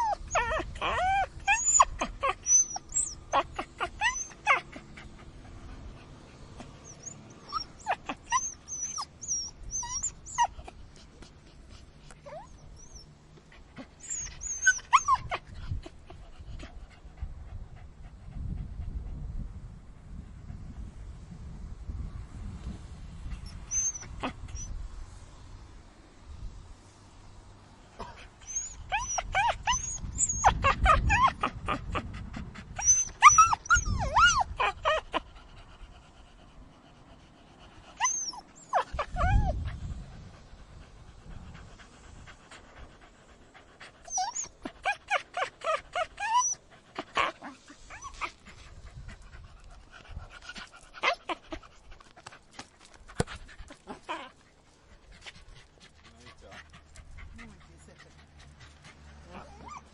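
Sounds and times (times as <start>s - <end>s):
dog yelping: 0.0s - 4.8s, 6.9s - 10.5s, 14.0s - 15.4s, 28.4s - 32.1s, 32.8s - 35.2s, 38.0s - 39.6s, 44.1s - 48.3s, 59.3s - 59.9s.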